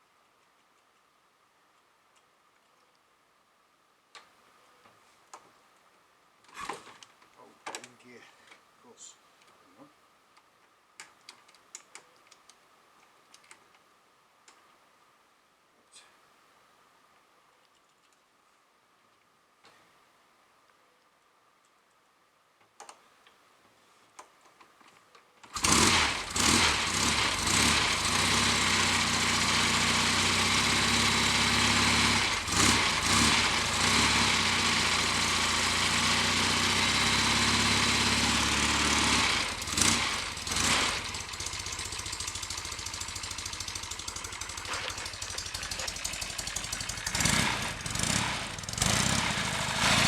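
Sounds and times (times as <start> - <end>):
motorcycle engine starting and revving: 25.5 - 50.0.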